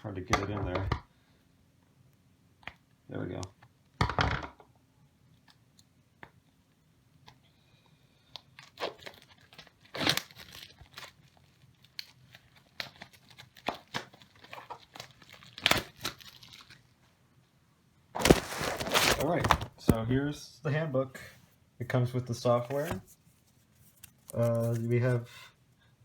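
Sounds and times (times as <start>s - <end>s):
wrapping tearing and crinkling: 8.3s - 17.0s, 18.2s - 20.0s, 22.7s - 25.2s.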